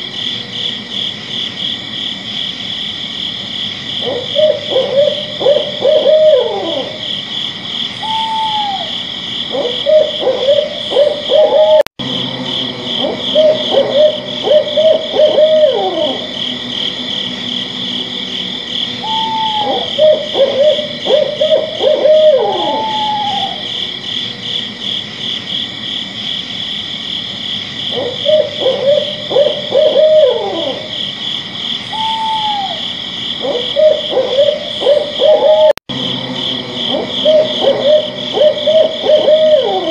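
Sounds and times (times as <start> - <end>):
owl hooting: 4.0 - 7.2, 7.9 - 24.9, 27.9 - 31.1, 31.8 - 39.9
high pulsing chirring: 10.6 - 24.4, 34.5 - 39.9.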